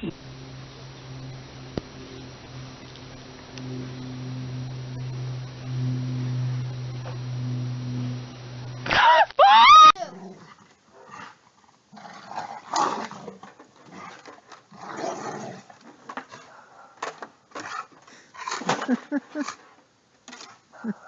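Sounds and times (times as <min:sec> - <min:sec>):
low hum: 0:00.0 - 0:10.0.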